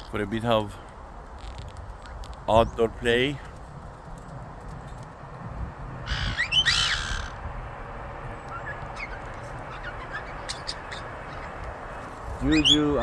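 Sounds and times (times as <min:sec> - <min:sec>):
parrot squawking: 0:06.1 - 0:07.4, 0:08.5 - 0:11.6, 0:12.4 - 0:13.0.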